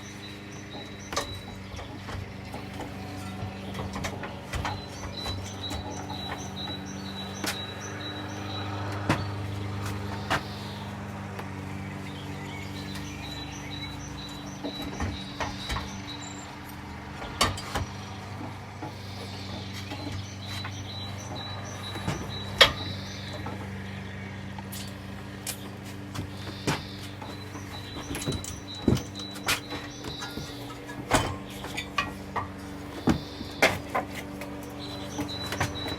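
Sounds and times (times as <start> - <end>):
metal tools knocking and clinking: 26.7 - 35.9.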